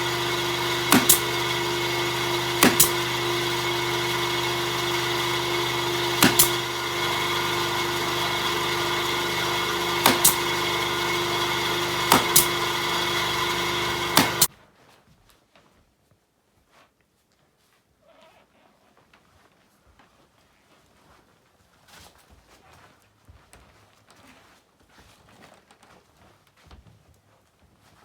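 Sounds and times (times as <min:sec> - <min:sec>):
nail gun firing: 0:00.0 - 0:14.5
steady machine drone: 0:00.0 - 0:14.5.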